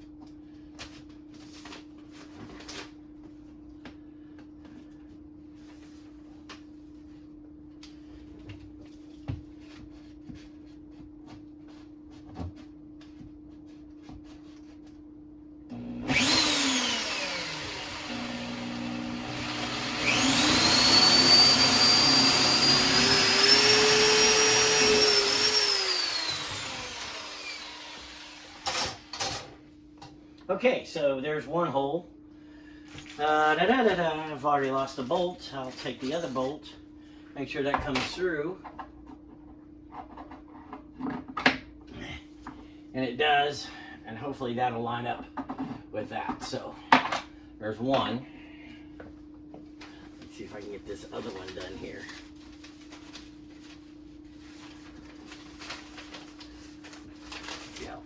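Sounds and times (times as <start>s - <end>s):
power drill whining: 15.7s - 29.2s.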